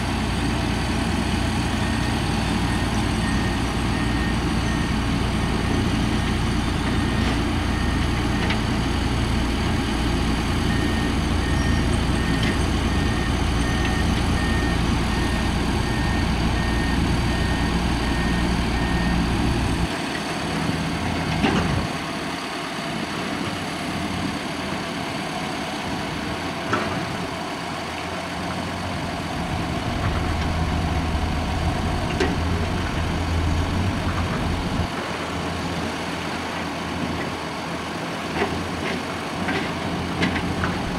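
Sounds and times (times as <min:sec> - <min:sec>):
diesel machinery engine rumble: 0:00.0 - 0:40.9
reversing alarm beeping: 0:01.5 - 0:08.8, 0:10.5 - 0:19.9, 0:29.4 - 0:34.9
engine knocks: 0:29.4 - 0:35.0.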